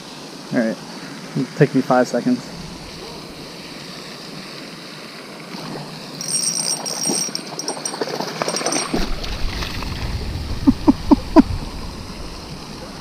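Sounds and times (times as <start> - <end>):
fishing gear rustling and clicking: 6.2 - 9.9
wind buffeting microphone: 8.9 - 13.0.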